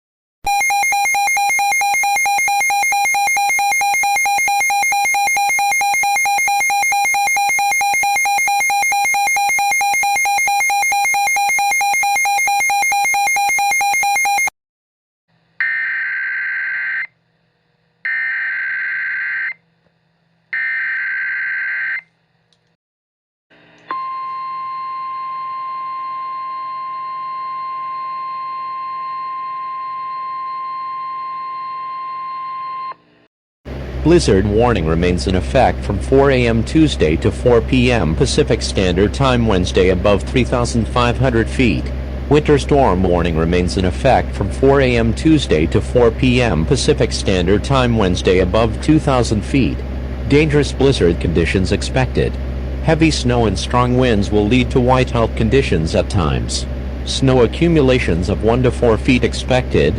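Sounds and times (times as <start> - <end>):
harsh electronic buzzing tone: 0.5 - 14.5
steady high alert tone: 0.5 - 14.5.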